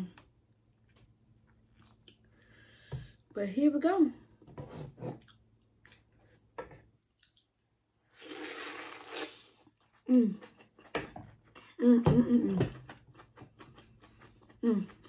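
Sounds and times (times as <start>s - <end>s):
wet slurp: 8.1s - 9.7s
person humming: 14.6s - 15.0s.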